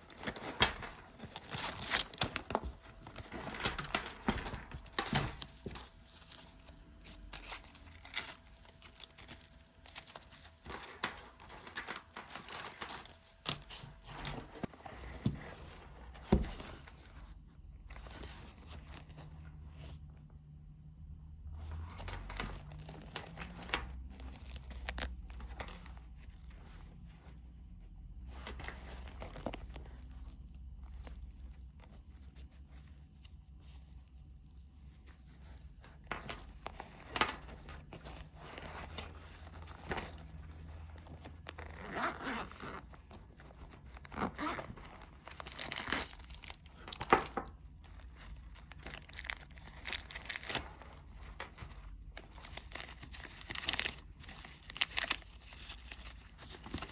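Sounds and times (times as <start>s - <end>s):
rustling: 0.0s - 17.4s
fabric and wrappers crinkling: 0.0s - 20.0s, 21.5s - 56.9s.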